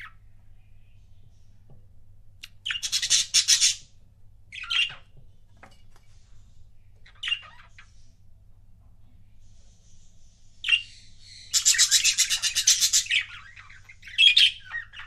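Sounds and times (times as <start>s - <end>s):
budgerigars squawking and chirping: 2.6s - 3.9s, 4.5s - 5.1s, 7.0s - 8.1s, 10.6s - 15.0s.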